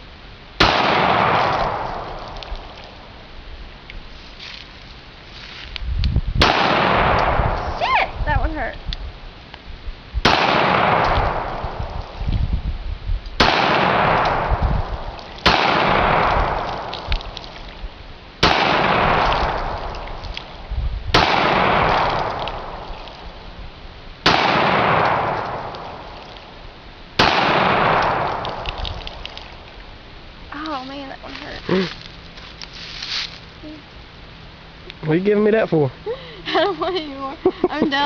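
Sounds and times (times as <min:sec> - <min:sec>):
pistol shots with rolling echo: 0:00.6 - 0:02.3, 0:06.4 - 0:07.6, 0:10.2 - 0:12.0, 0:13.4 - 0:17.0, 0:18.4 - 0:19.9, 0:21.1 - 0:22.9, 0:24.2 - 0:26.1, 0:27.2 - 0:28.7.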